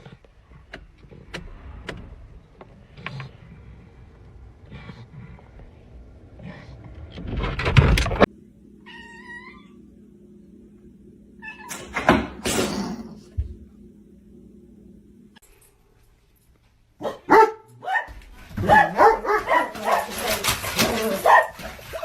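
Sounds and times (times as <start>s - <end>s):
cat meowing: 8.8s - 9.8s.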